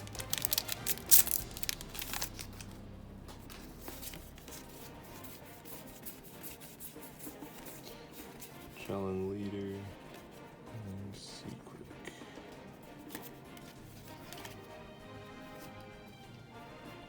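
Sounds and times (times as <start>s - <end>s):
foil pack tearing and crackling: 0.0s - 2.8s.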